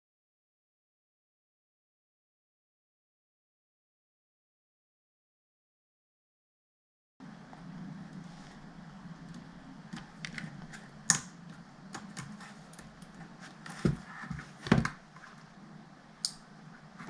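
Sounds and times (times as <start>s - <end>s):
steady low hum: 7.2s - 17.0s.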